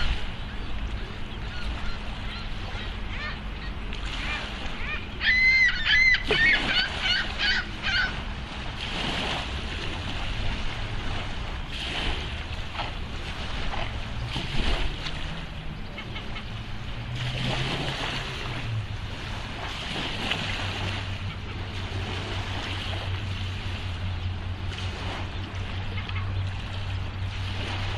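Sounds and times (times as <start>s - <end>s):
low steady hum: 0.0s - 27.9s
water: 0.0s - 27.9s
wind: 0.0s - 27.9s
honking waterfowl calls: 1.4s - 8.2s, 15.8s - 16.5s, 25.8s - 26.4s.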